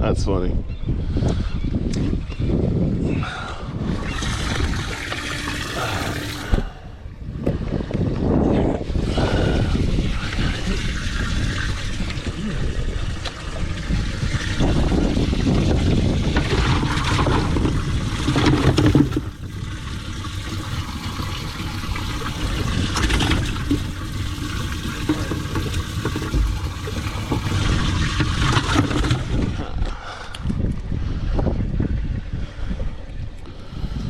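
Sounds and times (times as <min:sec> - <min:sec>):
water splashing and sloshing: 0:03.8 - 0:30.9.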